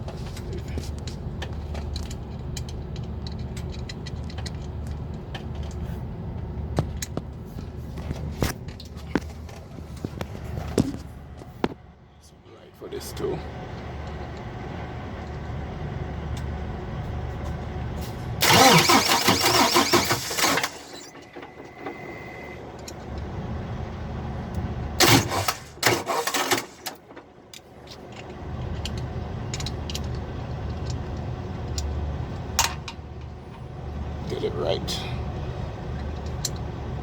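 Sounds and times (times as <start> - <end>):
low engine hum: 0.0 - 25.9, 26.9 - 37.0
diesel starter cranking: 18.0 - 36.8.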